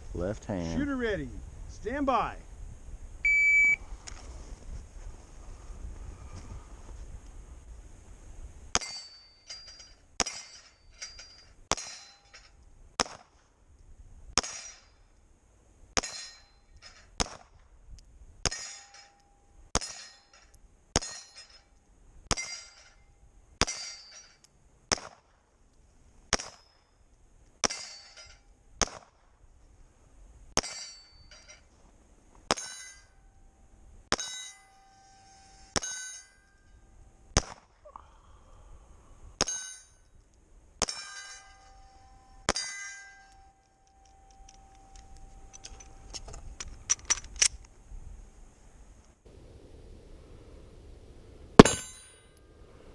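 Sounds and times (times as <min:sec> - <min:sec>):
steel plate ringing clang: 0:08.8 - 0:12.6, 0:16.0 - 0:17.0, 0:18.5 - 0:21.7, 0:23.6 - 0:24.4, 0:27.6 - 0:28.4, 0:30.6 - 0:31.7, 0:32.5 - 0:33.4, 0:34.1 - 0:36.8, 0:39.4 - 0:40.1, 0:40.8 - 0:46.0, 0:51.6 - 0:52.4
pistol shots: 0:24.9 - 0:25.2, 0:37.4 - 0:37.7, 0:51.6 - 0:52.0.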